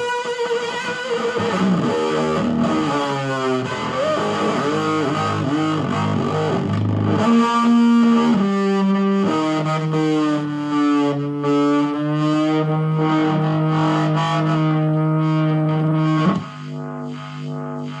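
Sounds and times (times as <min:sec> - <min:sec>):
distorted electric guitar: 0:00.0 - 0:18.0.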